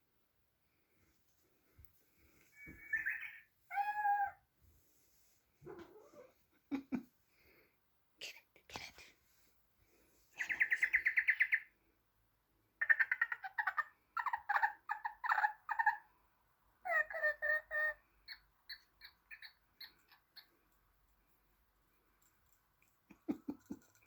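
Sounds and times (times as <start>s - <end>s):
bird-like chirping: 2.5s - 4.3s, 10.4s - 11.8s, 16.9s - 20.6s.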